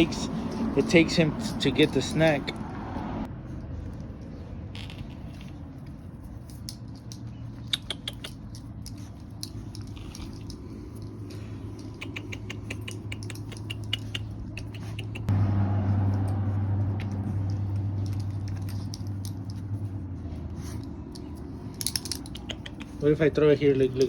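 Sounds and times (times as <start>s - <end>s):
puppy clicks and ticks: 3.6s - 24.0s
steady low hum: 8.6s - 23.7s.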